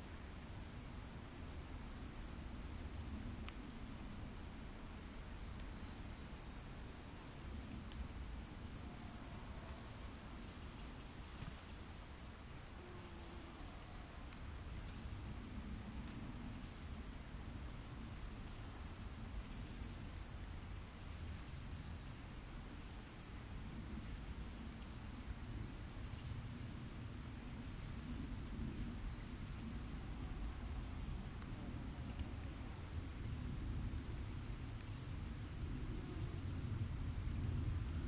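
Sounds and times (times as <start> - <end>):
insect trilling: 12.8 - 15.5, 34.0 - 38.0
steady low rumble: 13.7 - 38.0.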